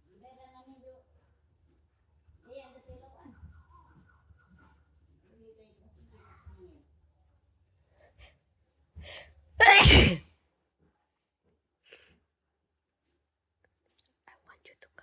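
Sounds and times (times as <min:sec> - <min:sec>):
person sneezing: 0:09.6 - 0:10.2.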